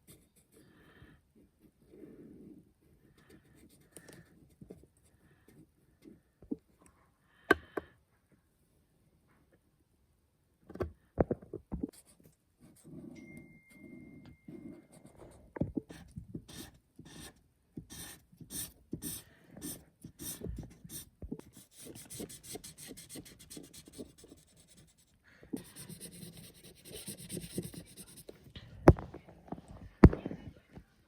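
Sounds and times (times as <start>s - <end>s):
pencil strokes on paper: 14.5s - 28.5s.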